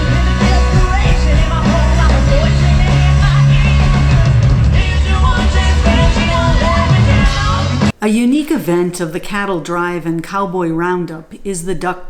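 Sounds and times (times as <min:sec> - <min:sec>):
live rock band playing: 0:00.0 - 0:07.9
person singing: 0:00.0 - 0:09.2.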